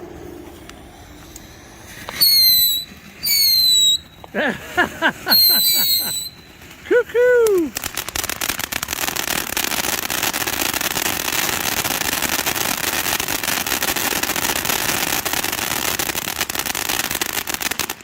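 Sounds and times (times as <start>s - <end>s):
fireworks fountain hissing and crackling: 0.0s - 18.0s.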